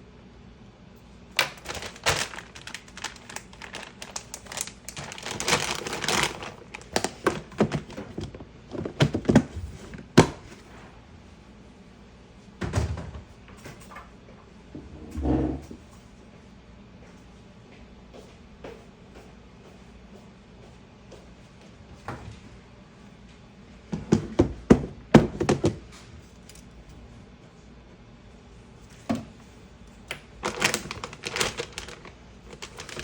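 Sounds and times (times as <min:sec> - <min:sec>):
containers clicking and clattering: 0:01.4 - 0:10.4, 0:30.4 - 0:33.0.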